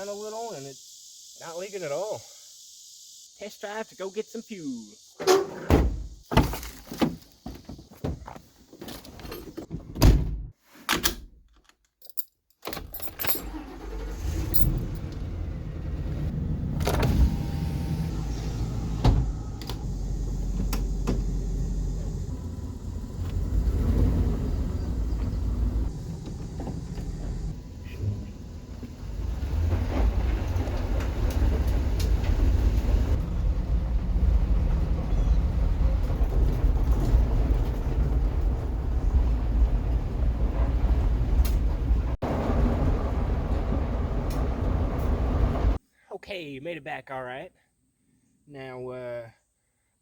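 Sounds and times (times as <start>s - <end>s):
keys jangling: 11.8s - 13.6s
car engine and road rumble: 12.9s - 45.8s.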